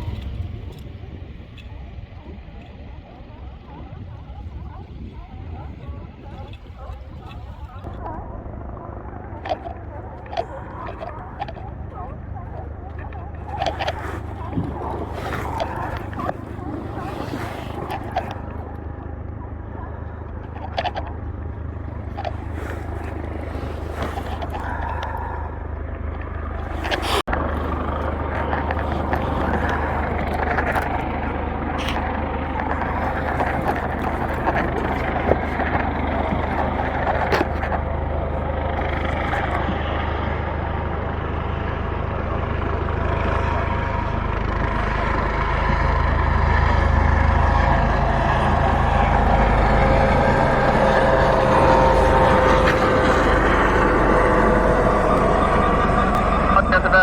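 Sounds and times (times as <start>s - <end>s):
helicopter rotor and turbine: 0.0s - 57.0s.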